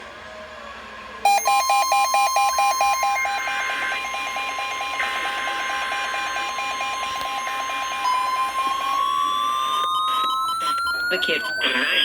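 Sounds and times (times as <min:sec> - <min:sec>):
tone sliding upward in pitch: 0:01.3 - 0:11.8
long steady alert tone: 0:01.3 - 0:12.0
rapid pulsing beep: 0:01.3 - 0:12.0.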